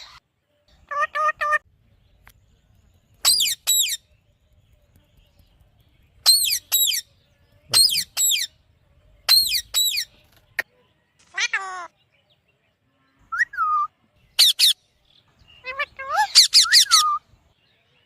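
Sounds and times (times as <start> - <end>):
parakeet shrill calls: 3.2 - 4.0, 6.2 - 7.0, 7.8 - 8.5, 14.4 - 14.8, 15.6 - 17.2.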